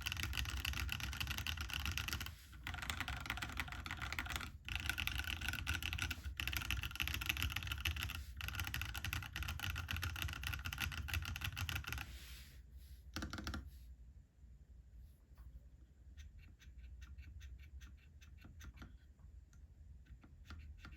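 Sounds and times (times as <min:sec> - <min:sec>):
mechanical keyboard typing: 0:00.0 - 0:12.1, 0:13.2 - 0:13.6.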